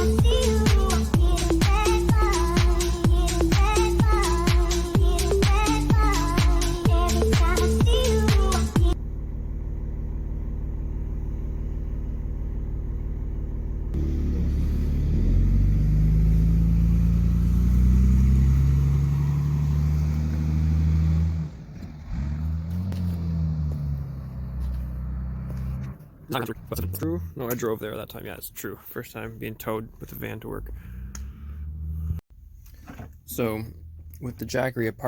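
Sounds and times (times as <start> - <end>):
vehicle engine accelerating: 0.0 - 27.6, 29.4 - 32.2.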